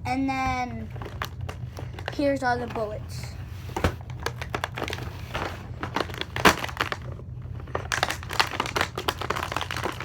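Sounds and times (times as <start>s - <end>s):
plastic and paper crinkling: 0.8s - 10.0s
packaging clicks and knocks: 3.7s - 10.0s
packaging crack: 3.8s - 10.0s.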